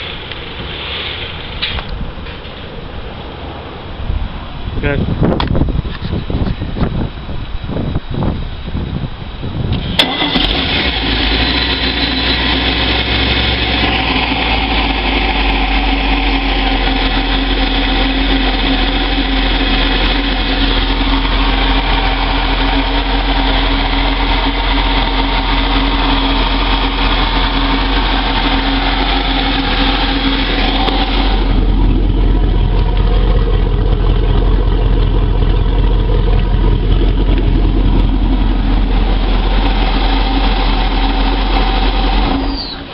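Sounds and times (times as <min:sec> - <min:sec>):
boat engine running: 0:09.9 - 0:42.9.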